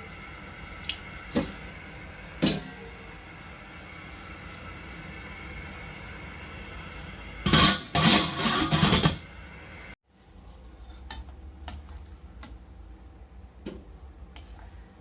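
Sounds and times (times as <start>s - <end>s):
pan and utensil clatter: 7.5s - 9.2s.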